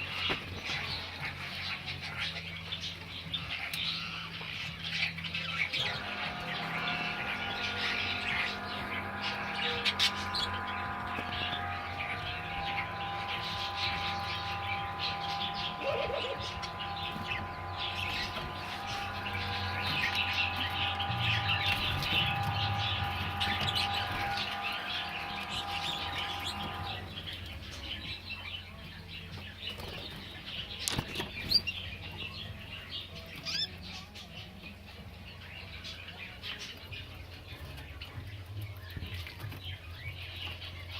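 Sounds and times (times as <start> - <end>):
canaries chirping and twittering: 0.0 - 40.9
steady hum: 5.4 - 32.8.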